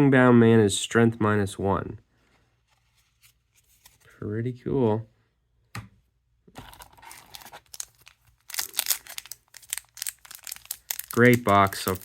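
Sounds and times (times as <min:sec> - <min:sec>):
wrapper tearing and crinkling: 0:06.7 - 0:12.0.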